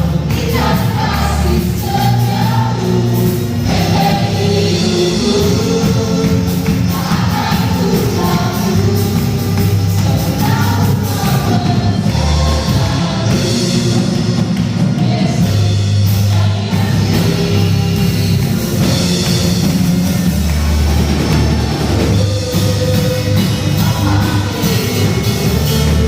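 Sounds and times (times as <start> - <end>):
drum kit: 0.0 - 26.0
live rock band playing: 0.0 - 26.0
low bass notes: 0.0 - 26.0
person singing: 0.1 - 15.7, 21.8 - 26.0.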